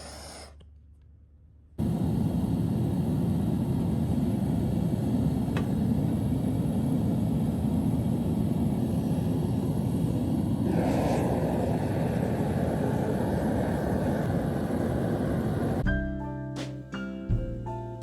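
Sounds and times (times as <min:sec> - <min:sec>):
gas burner rushing: 0:01.8 - 0:15.8.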